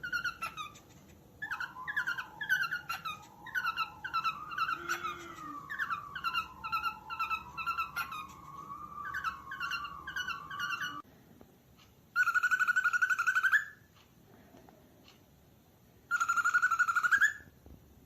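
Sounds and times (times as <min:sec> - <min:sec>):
cockatiels chirping: 0:00.0 - 0:11.0, 0:12.2 - 0:13.8, 0:16.1 - 0:17.5
rapid cockatiel calls: 0:00.0 - 0:11.0, 0:12.2 - 0:13.8, 0:16.1 - 0:17.5
wavering whistled note: 0:01.4 - 0:11.0.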